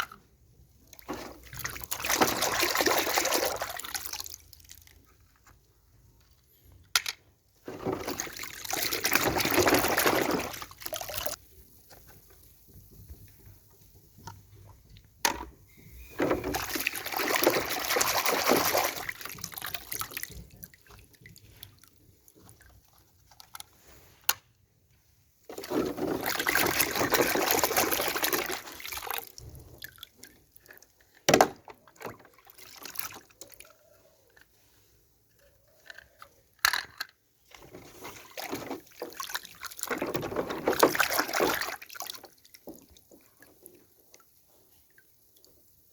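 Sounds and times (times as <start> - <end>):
liquid pouring: 7.8 - 11.4.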